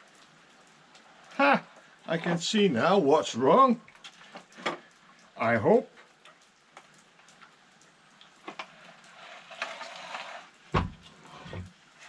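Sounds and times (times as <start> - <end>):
scraping rasp: 8.8 - 10.5
dull knocks: 10.7 - 11.0.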